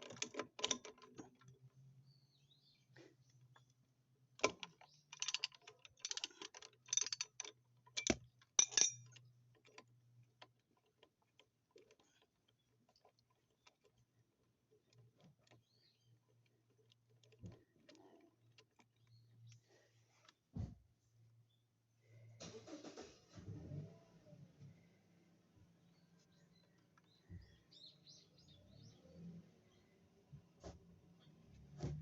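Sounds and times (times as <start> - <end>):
metal tools clinking: 4.8 - 9.2.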